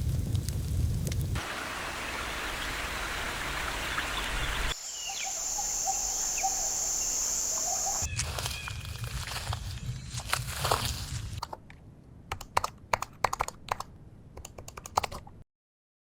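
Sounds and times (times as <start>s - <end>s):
hiss of running water: 1.3s - 8.1s.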